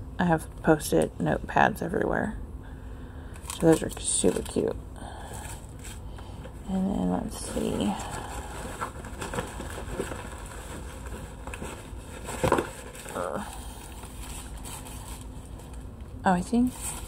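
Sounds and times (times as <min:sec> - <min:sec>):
packaging rustling and clicking: 0:03.4 - 0:04.6, 0:08.1 - 0:16.0.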